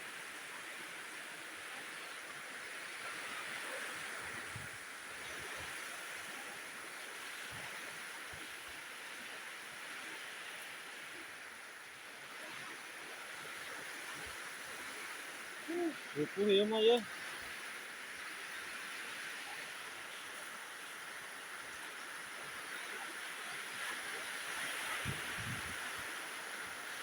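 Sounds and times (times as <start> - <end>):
heavy rain hissing: 15.6 - 17.0.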